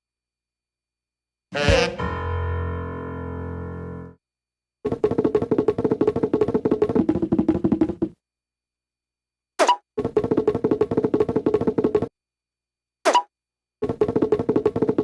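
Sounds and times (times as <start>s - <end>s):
held musical tone: 1.6s - 4.1s.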